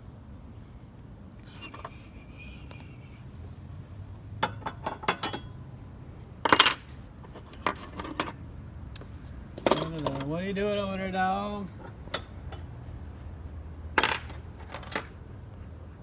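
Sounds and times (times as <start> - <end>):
metal clank: 4.4 - 5.6, 6.4 - 6.9
wrenches clinking against metal: 4.4 - 5.6, 6.4 - 8.6, 9.6 - 10.4, 14.0 - 15.4.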